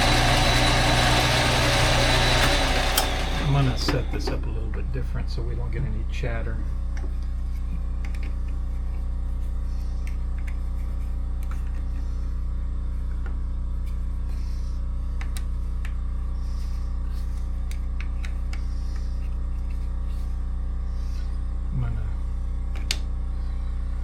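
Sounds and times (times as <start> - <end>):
lathe humming: 0.0 - 5.8.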